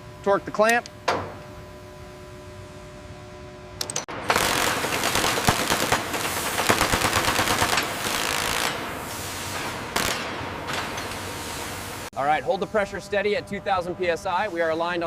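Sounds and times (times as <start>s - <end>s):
pneumatic tool hammering: 4.0s - 11.8s.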